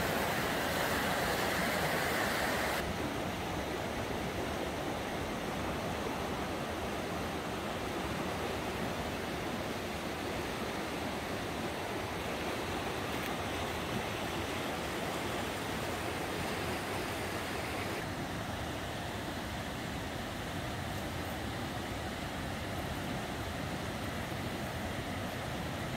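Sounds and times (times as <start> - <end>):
water rushing over rocks: 0.0 - 20.4.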